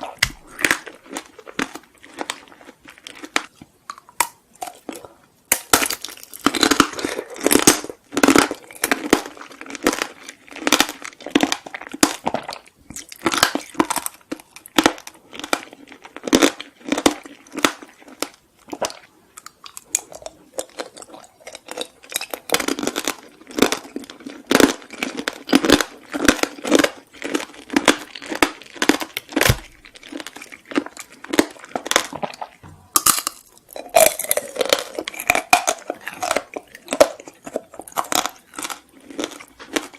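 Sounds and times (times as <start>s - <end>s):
plastic packaging crinkling: 26.6s - 32.4s.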